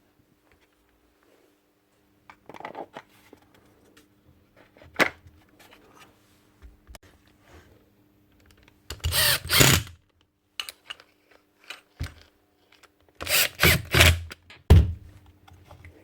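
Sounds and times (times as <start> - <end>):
cordless drill driving screws: 8.9 - 9.9, 13.2 - 14.2
small clicks of parts handled: 10.1 - 13.2.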